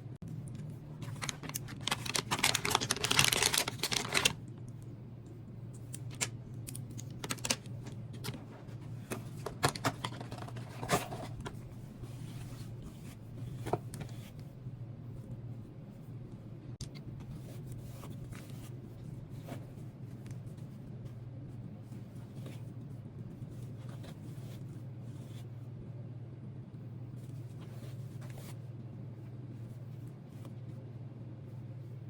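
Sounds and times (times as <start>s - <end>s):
steady low hum: 0.0s - 32.0s
handling rustle: 1.0s - 4.4s.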